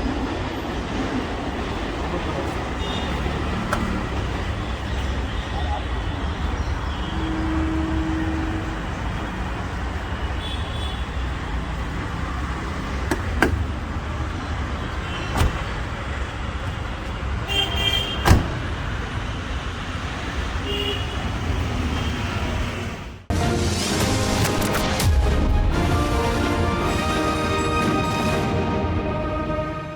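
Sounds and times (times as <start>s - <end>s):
passing vehicles hum: 0.0s - 17.5s.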